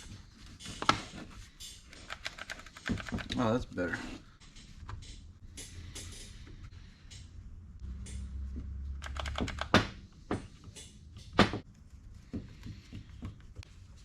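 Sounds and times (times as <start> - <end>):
low hum: 4.3 - 9.2.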